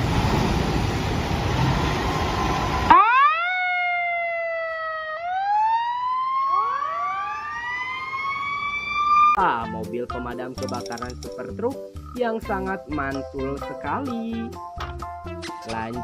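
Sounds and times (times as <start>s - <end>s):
fire engine siren wailing: 1.7s - 9.4s.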